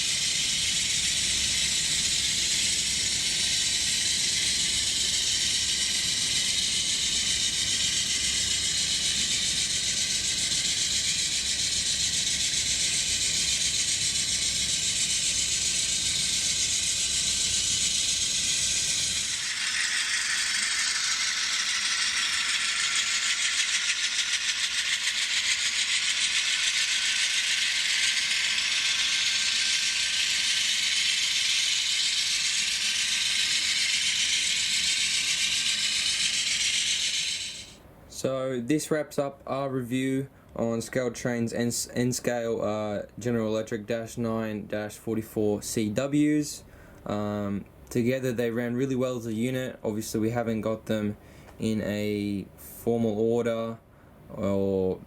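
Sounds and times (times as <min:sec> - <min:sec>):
model train wheels rattling: 0:00.0 - 0:37.8
faint motor whine: 0:00.0 - 0:55.0.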